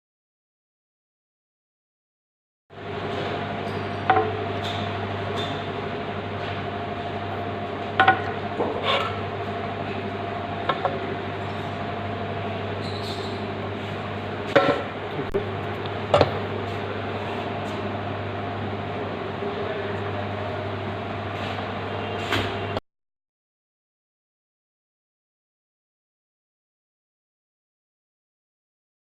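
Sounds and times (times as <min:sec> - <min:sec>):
steady mechanical hum: 0:02.7 - 0:22.8
knocks and clinks of hard objects: 0:08.0 - 0:08.7, 0:14.5 - 0:14.9.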